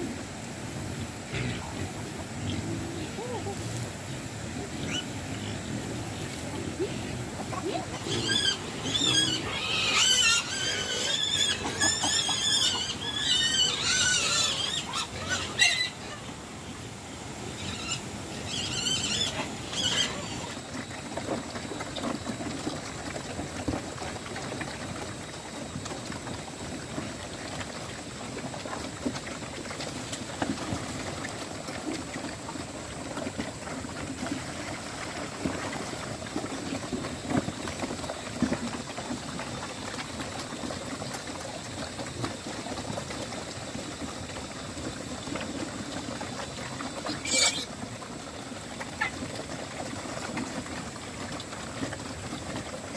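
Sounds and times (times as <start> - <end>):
water running and splashing: 0.0 - 15.3.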